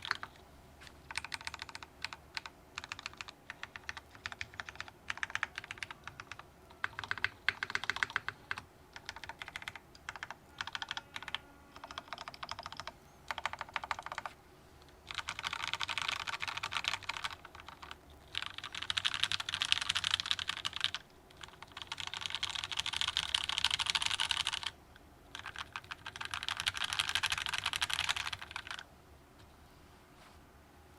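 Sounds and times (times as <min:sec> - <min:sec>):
mechanical keyboard typing: 0:00.0 - 0:00.4, 0:01.0 - 0:14.4, 0:15.0 - 0:28.8.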